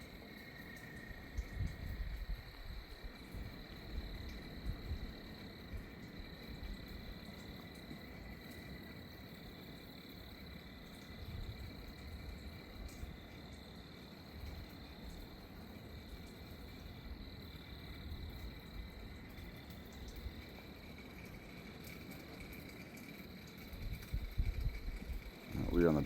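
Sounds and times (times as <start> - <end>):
insects calling: 0.0 - 26.0
wind rumble on microphone: 1.1 - 7.0, 11.2 - 13.1, 23.6 - 26.0
frogs calling: 24.6 - 26.0.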